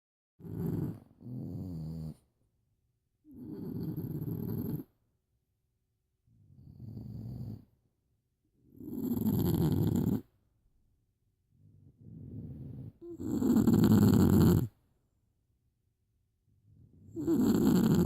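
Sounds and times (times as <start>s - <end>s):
dog snoring: 0.4s - 2.3s, 3.2s - 5.0s, 6.3s - 7.8s, 8.6s - 10.3s, 11.6s - 14.8s, 16.7s - 18.0s.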